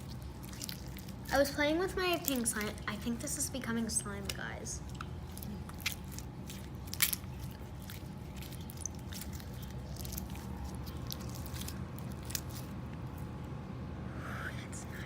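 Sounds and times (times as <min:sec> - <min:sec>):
slime squished by hand: 0:00.0 - 0:03.2, 0:04.2 - 0:13.1
low hum: 0:00.0 - 0:15.0.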